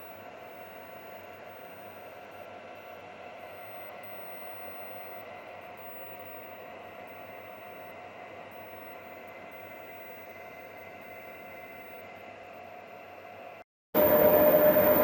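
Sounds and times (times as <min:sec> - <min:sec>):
faint high steady tones: 0:14.0 - 0:15.0.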